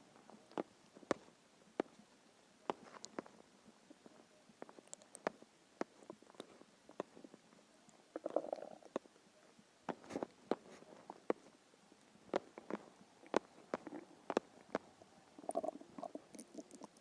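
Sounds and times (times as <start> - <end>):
stomach gurgling: 8.0 - 9.1, 12.3 - 17.0.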